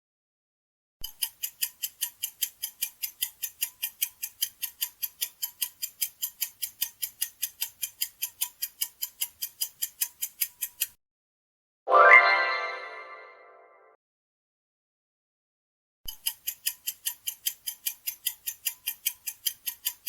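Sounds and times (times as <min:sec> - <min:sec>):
ticking clock timer: 0:01.0 - 0:11.0, 0:16.1 - 0:20.0.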